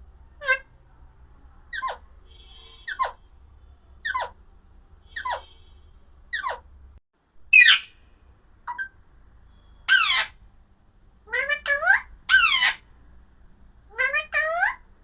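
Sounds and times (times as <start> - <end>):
harsh parakeet squawk: 0.4 - 0.7, 1.7 - 2.0, 2.8 - 3.2, 4.0 - 4.4, 5.1 - 5.5, 6.3 - 6.7, 7.5 - 8.0, 8.7 - 9.0, 9.8 - 10.4, 11.3 - 12.9, 13.9 - 14.9
parakeet calling: 1.7 - 2.0, 2.8 - 3.2, 4.0 - 4.4, 5.1 - 5.5, 6.3 - 6.7, 7.5 - 8.0, 8.7 - 9.0, 9.8 - 10.4, 11.3 - 12.9, 13.9 - 14.8.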